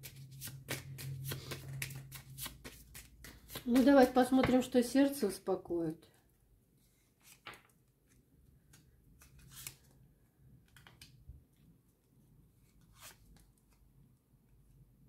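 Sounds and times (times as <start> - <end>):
cards slapping and rustling: 0.0 - 4.4.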